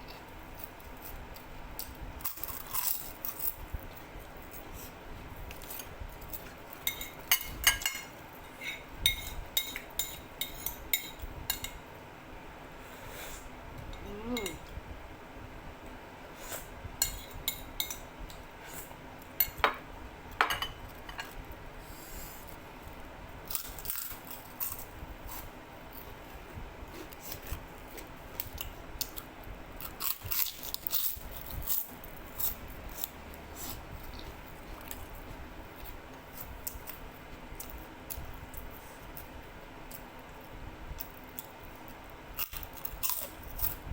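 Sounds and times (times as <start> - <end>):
cutlery clinking against bowl: 6.8 - 11.8, 19.4 - 21.4.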